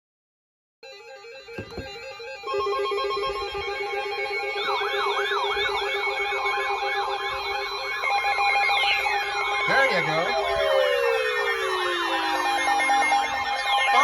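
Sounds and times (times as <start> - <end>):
siren-style warble: 1.1 - 14.0
weather radio alert alarms: 7.5 - 14.0.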